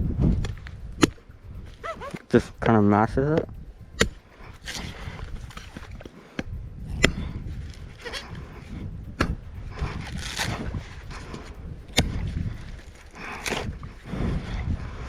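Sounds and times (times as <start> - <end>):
chopper striking coconut husk: 0.0 - 14.2
husk rustling: 0.3 - 2.7.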